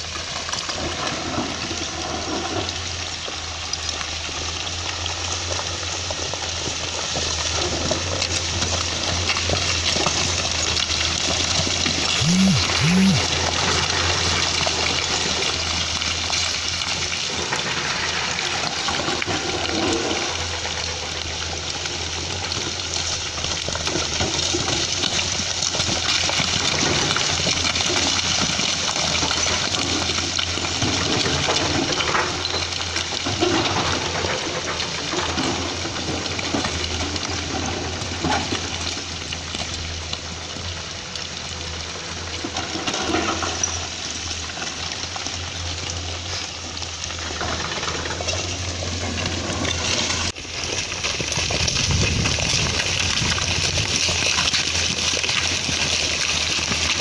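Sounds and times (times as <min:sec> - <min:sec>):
short blips: 0:12.2 - 0:13.3.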